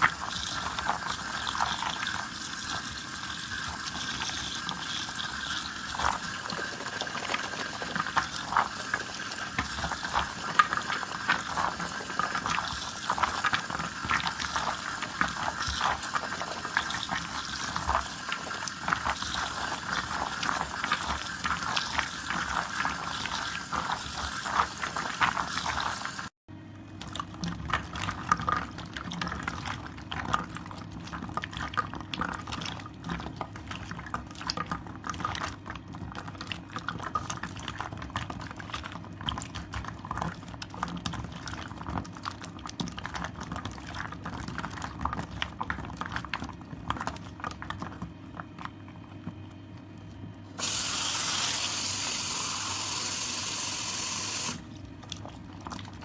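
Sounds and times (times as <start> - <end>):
bubbles popping: 0.0 - 25.9
soap lather squelching: 0.0 - 26.3, 50.6 - 56.0.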